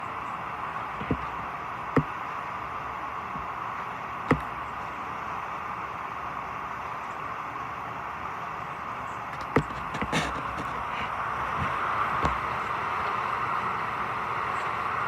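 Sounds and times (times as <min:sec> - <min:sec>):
short knocks: 0:01.0 - 0:02.2, 0:04.3 - 0:04.6, 0:09.3 - 0:12.5
clothes dryer whirring: 0:09.3 - 0:15.0.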